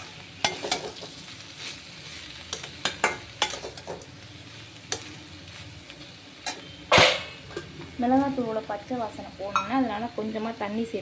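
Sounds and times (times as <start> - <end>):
food sizzling in a pan: 0.0 - 11.0.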